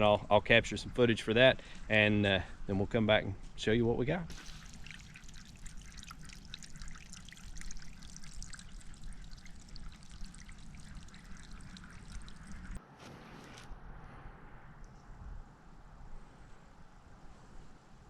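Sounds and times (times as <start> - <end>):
water trickling into a pond: 4.3 - 12.8.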